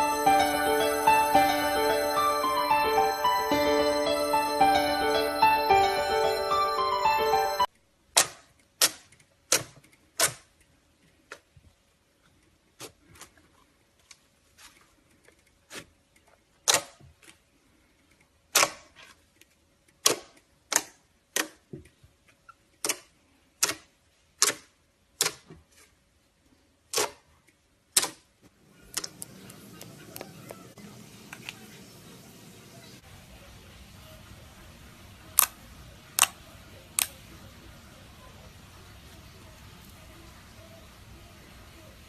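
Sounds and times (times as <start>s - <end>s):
music: 0.0s - 7.7s.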